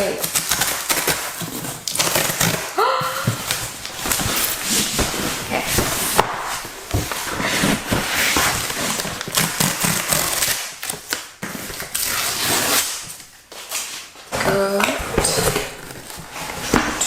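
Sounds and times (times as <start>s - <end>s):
paper and card rustling: 0.0s - 17.0s.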